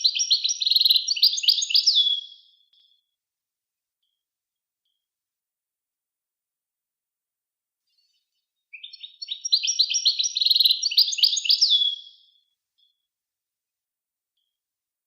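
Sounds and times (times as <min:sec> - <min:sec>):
songbird singing: 0:00.0 - 0:03.1, 0:07.9 - 0:13.1.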